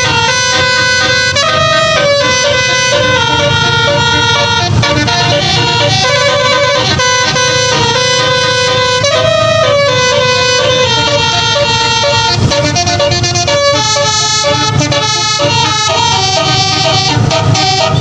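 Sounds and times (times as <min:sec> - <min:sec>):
low engine noise: 0:00.0 - 0:18.0
multi-trumpet bus horn tune: 0:00.0 - 0:18.0.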